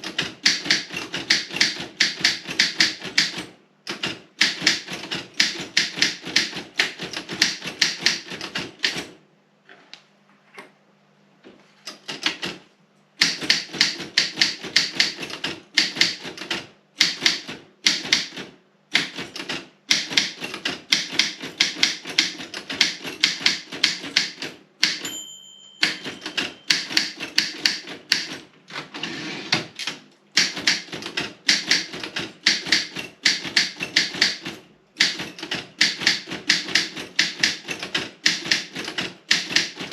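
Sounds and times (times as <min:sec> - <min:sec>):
typewriter key strikes: 0:00.0 - 0:09.1, 0:13.2 - 0:25.2, 0:25.8 - 0:28.5, 0:29.8 - 0:39.9
typewriter bell ringing: 0:24.9 - 0:27.5.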